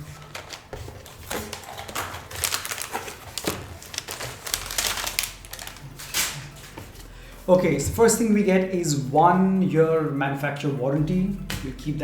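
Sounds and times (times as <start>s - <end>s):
packaging crinkling and rustling: 0.0s - 7.1s.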